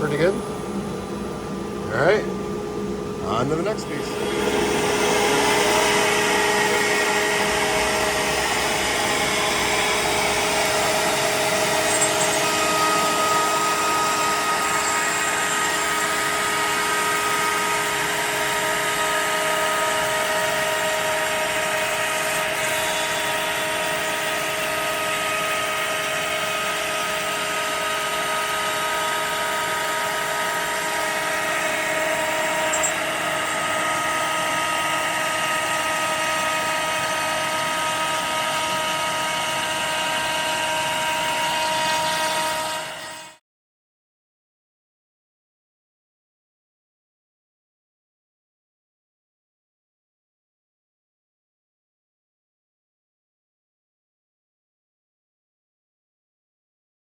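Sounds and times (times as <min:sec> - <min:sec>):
router spindle whining: 0:00.0 - 0:43.4.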